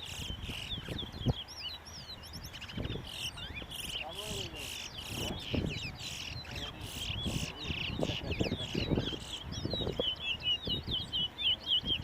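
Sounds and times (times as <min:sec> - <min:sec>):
finches chirping: 0:00.0 - 0:12.0.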